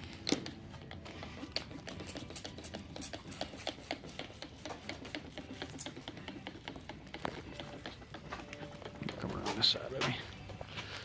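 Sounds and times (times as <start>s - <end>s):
hand rubbing oil on wood: 0.0s - 11.0s.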